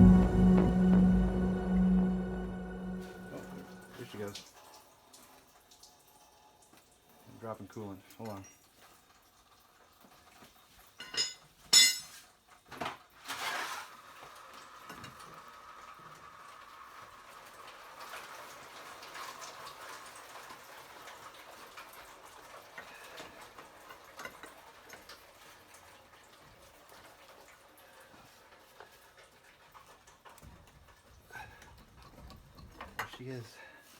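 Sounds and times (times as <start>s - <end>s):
coolant trickling and dripping: 4.0s - 11.0s, 14.9s - 33.9s.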